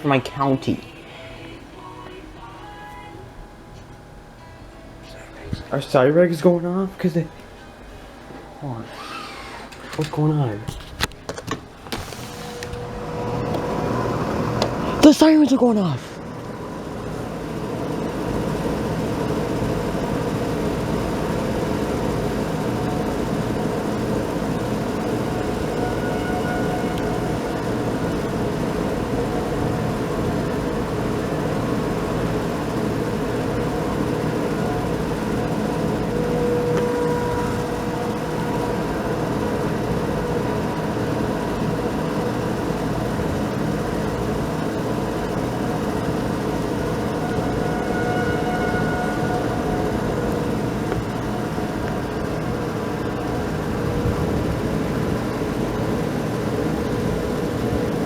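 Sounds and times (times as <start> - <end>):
faint outdoor warning sirens: 11.7 - 58.0
steady low noise: 12.0 - 58.0.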